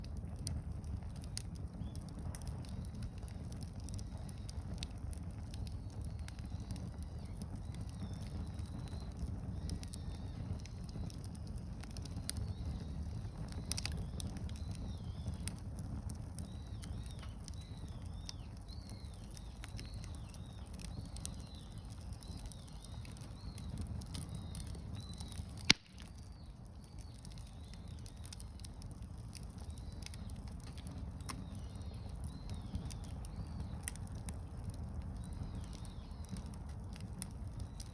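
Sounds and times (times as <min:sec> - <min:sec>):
wood fire crackling: 0:00.0 - 0:37.9
loud fire pop: 0:25.0 - 0:26.3.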